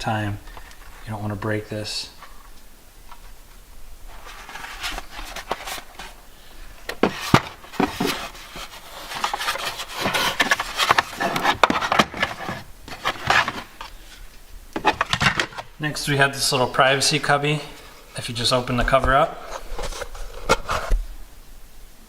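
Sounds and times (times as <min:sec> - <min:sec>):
plastic trim rubbing and scraping: 0:06.9 - 0:14.2, 0:14.8 - 0:21.1.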